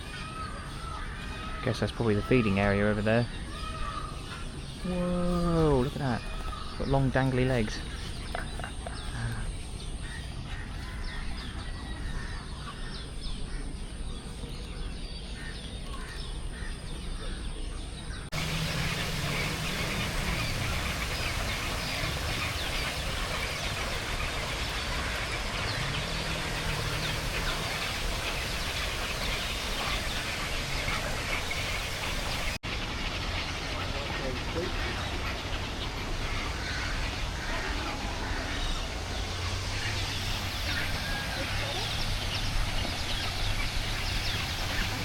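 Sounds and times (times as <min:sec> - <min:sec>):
many birds chirping: 0:00.0 - 0:45.0
dense wash of noise: 0:18.3 - 0:34.0.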